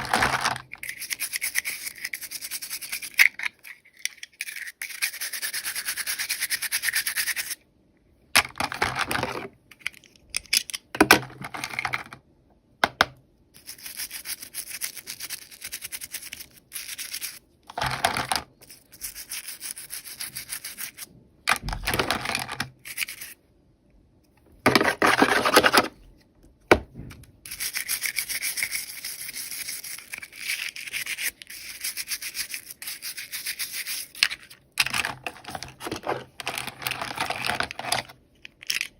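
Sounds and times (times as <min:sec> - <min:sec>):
toy packaging scratchy rasping: 0:27.5 - 0:38.9.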